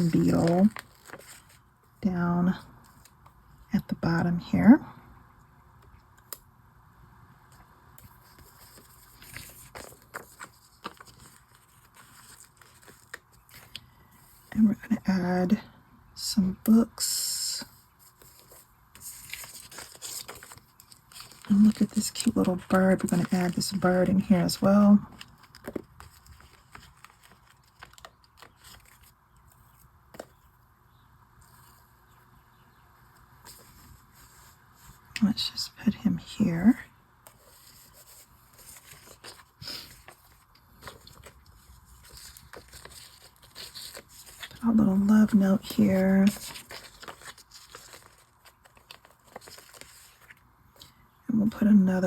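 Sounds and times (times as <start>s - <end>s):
paper rustling: 0.0s - 1.7s, 8.0s - 14.5s, 18.0s - 30.5s, 33.4s - 35.0s, 37.2s - 50.9s.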